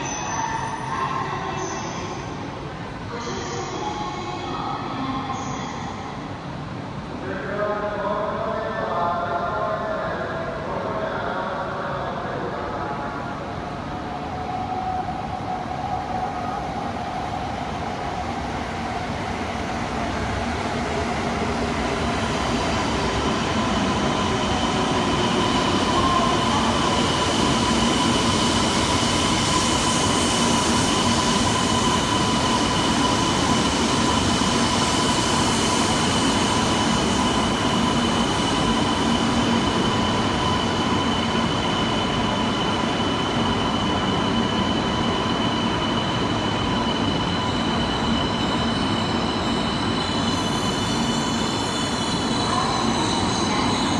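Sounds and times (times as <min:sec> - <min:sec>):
high-pitched wheel and brake squeal: 0:38.5 - 0:53.9.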